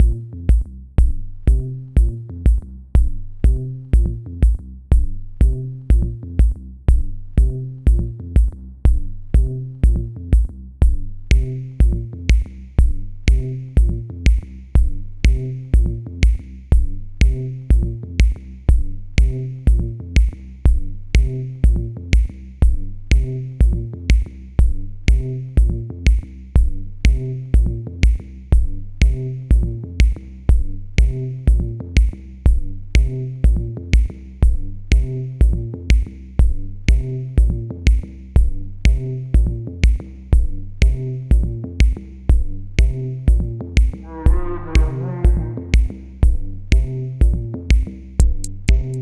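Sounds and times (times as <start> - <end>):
electronic music with drum beat: 0.0 - 49.0.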